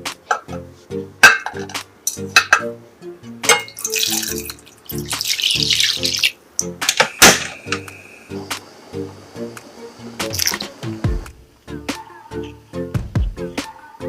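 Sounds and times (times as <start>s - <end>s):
plucked melody music: 0.0s - 8.0s, 9.0s - 13.6s
water running: 3.5s - 11.3s.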